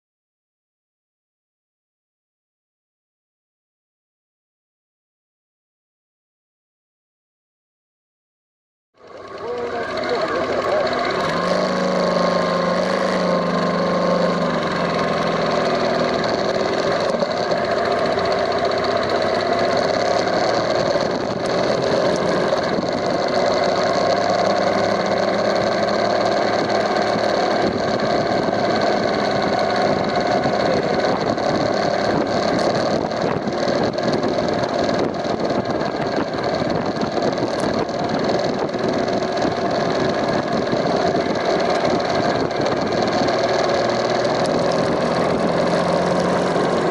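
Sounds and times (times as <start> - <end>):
motorcycle engine idling: 9.0 - 11.4, 12.3 - 46.9
abnormal engine noise: 9.0 - 46.9.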